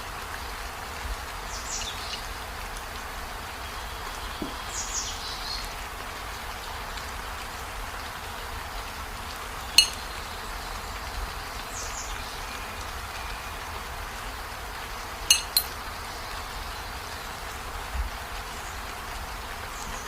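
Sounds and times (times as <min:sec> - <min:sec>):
steady hiss: 0:00.0 - 0:20.0
sharp clink: 0:09.8 - 0:10.0, 0:15.3 - 0:15.7
high falling chirps: 0:09.8 - 0:10.1, 0:15.3 - 0:15.7.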